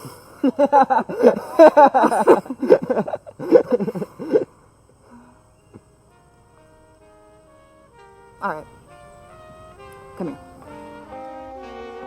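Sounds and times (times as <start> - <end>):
person laughing: 0.0 - 4.5.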